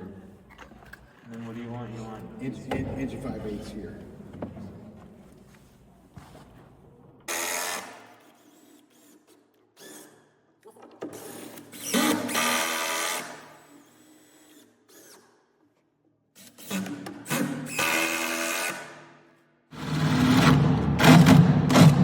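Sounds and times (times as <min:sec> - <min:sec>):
power drill driving screws: 0:07.3 - 0:10.3, 0:11.1 - 0:15.4, 0:16.4 - 0:19.0.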